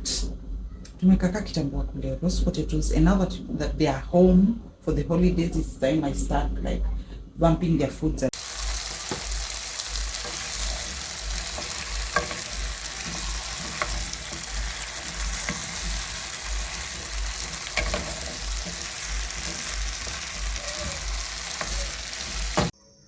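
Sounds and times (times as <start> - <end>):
vegetables sizzling in a pan: 8.4 - 22.7.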